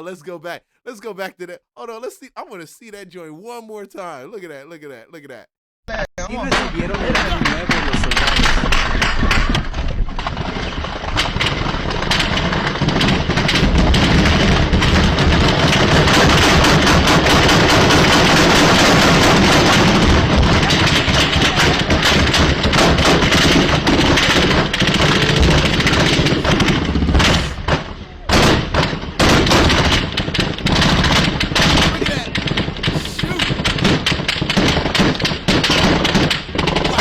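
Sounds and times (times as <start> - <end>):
automatic gunfire: 10.2 - 37.0.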